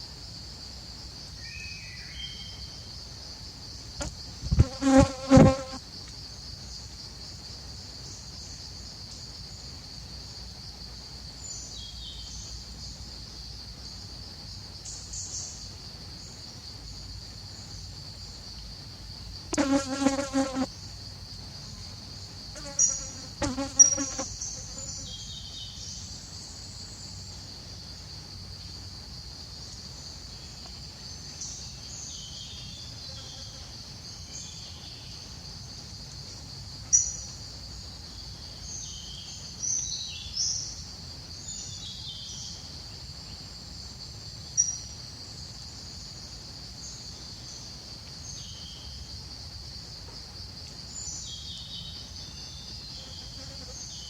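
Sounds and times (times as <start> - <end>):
insect trilling: 19.5 - 20.7, 22.6 - 25.2.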